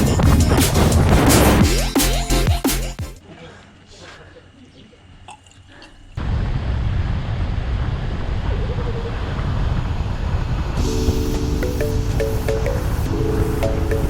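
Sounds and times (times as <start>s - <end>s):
wind and road noise: 6.2s - 14.0s
music notes: 10.8s - 14.0s.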